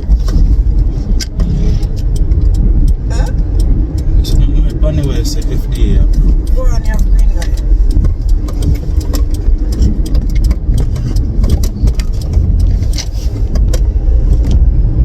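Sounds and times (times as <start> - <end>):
road and engine rumble in car: 0.0 - 15.0
clicks and rattles: 3.6 - 14.6.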